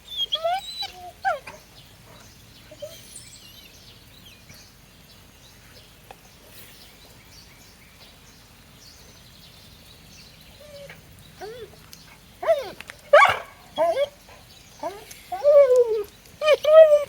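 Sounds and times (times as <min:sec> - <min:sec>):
dog whine: 0:00.0 - 0:01.4, 0:12.4 - 0:14.1, 0:14.8 - 0:17.0
faint birds chirping: 0:00.0 - 0:17.0
rain hiss: 0:00.0 - 0:17.0.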